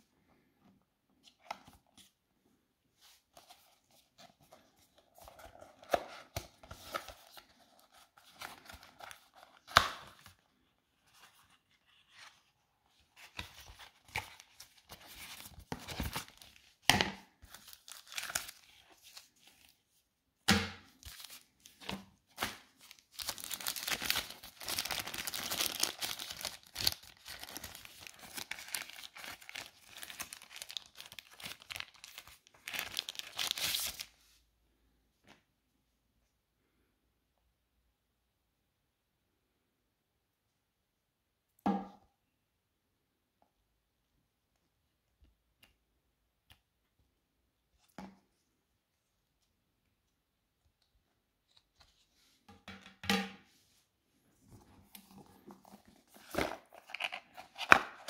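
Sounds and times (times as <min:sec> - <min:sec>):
tearing and crinkling: 0:21.0 - 0:34.1.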